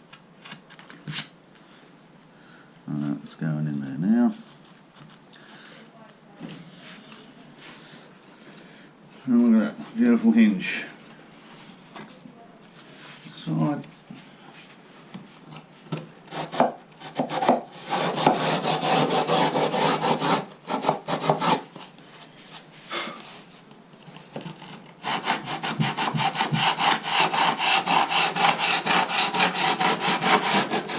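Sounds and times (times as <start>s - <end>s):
hand tool rasping: 16.3s - 21.6s, 25.0s - 30.9s.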